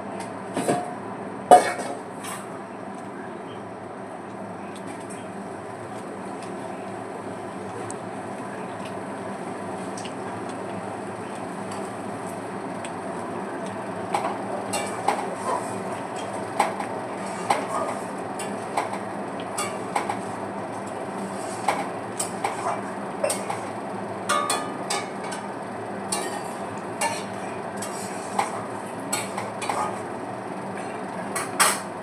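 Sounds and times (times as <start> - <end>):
steady background noise: 0.0 - 32.0
dishes clinking and scraping: 1.5 - 2.5, 14.1 - 20.4, 21.3 - 25.5, 26.1 - 30.1, 30.8 - 31.9.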